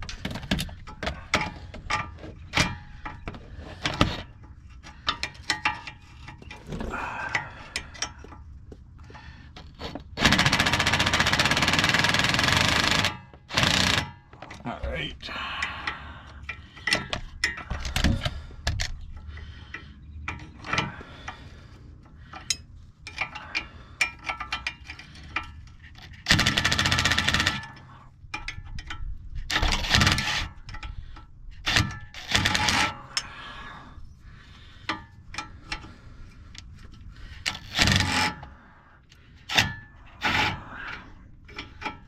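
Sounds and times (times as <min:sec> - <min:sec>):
loud rasping bursts: 0:10.2 - 0:14.2, 0:37.5 - 0:38.4.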